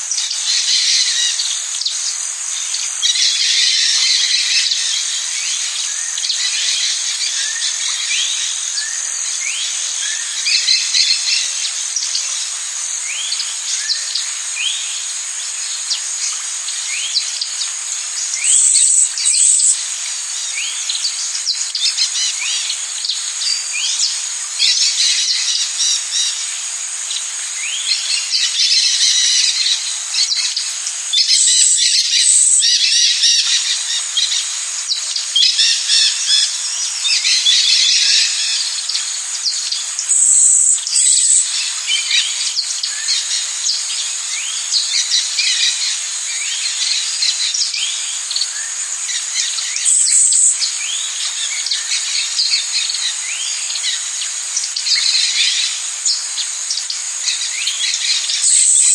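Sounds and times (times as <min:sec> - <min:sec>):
high insect drone: 0:00.0 - 0:58.9
loud insect buzz: 0:00.0 - 0:58.9
bird calls and chirps: 0:00.1 - 0:58.9.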